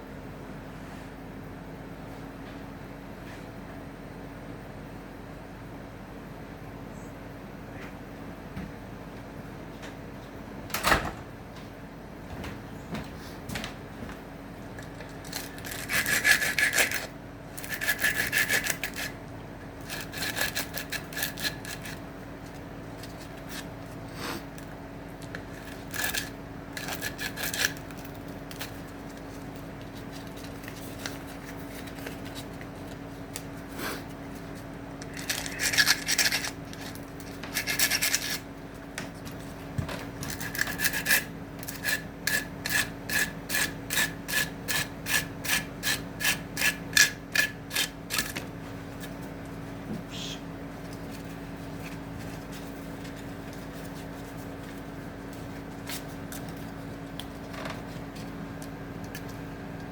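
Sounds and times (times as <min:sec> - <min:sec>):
hand saw cutting wood: 0:15.3 - 0:19.2, 0:19.8 - 0:22.0, 0:25.6 - 0:28.7, 0:35.5 - 0:38.4, 0:40.3 - 0:48.4.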